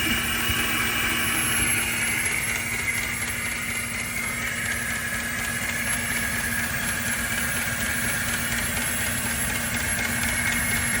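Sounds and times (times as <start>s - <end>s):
steady high whine: 0.0s - 8.6s
engine idling roughly: 0.0s - 11.0s.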